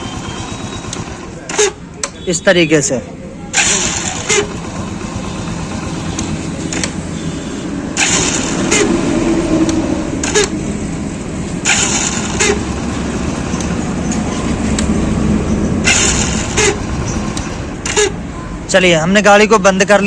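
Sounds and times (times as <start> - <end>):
motorcycle engine running: 0.0 - 1.6, 3.5 - 7.2, 7.8 - 18.6
starter motor whirring grind: 0.0 - 2.2, 3.5 - 14.9, 15.8 - 18.3
starter click: 6.1 - 7.0.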